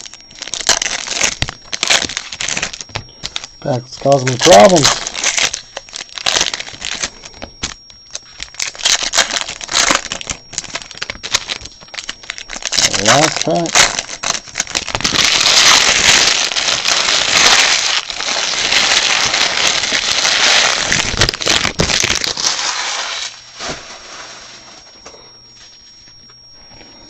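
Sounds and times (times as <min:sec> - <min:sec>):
foil wrapper tearing and crinkling: 0:00.0 - 0:24.5.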